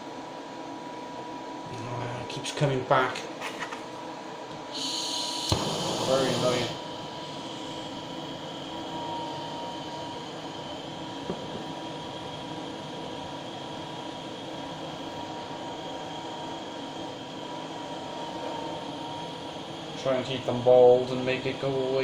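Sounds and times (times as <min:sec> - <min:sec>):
blowtorch flame hissing: 0:04.7 - 0:22.0.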